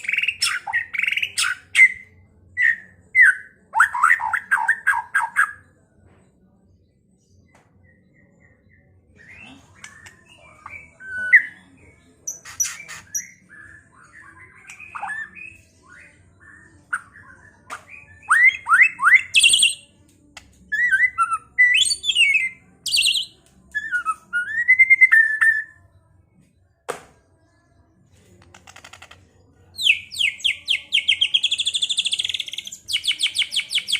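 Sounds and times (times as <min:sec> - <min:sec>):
songbird singing whistled trills: 0:07.8 - 0:19.9, 0:20.7 - 0:25.8, 0:29.8 - 0:33.9.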